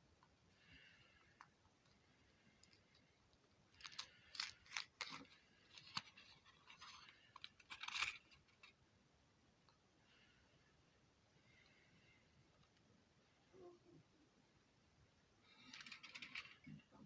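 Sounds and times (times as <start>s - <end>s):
wrapper crinkling and crackling: 3.7s - 8.7s.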